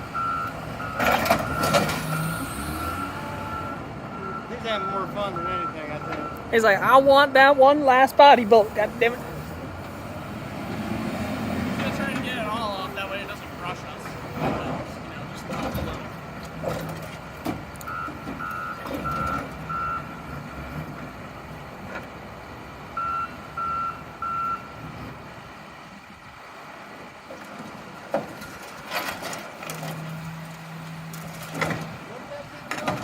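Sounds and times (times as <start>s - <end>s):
backup alarm beeps: 0.2s - 1.7s, 2.8s - 6.9s, 17.9s - 20.1s, 23.0s - 24.7s.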